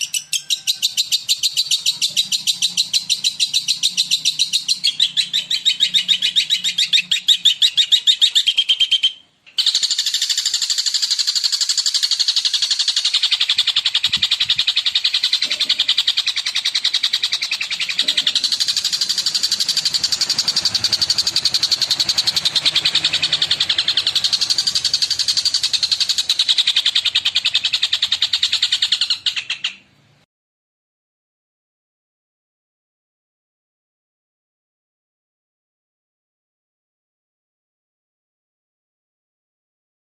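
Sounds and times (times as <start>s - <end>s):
bird rapid chattering song: 0.0s - 29.9s.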